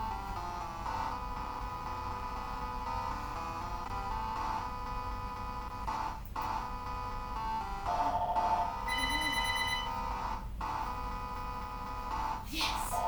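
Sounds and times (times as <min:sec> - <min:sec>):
electronic ringtone tones: 0:07.8 - 0:10.3.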